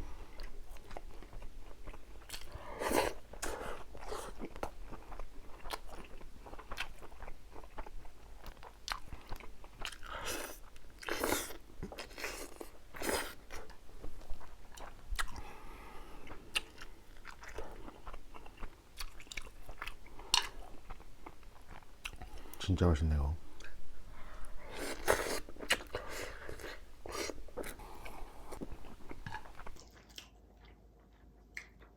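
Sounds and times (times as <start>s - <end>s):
person chewing and biting: 0.2s - 15.6s, 16.2s - 22.6s, 24.4s - 31.9s.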